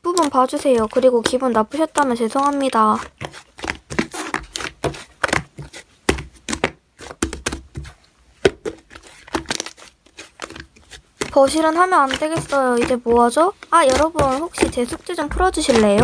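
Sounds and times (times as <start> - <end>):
slime crackling and popping: 0.0 - 7.9, 8.6 - 16.0.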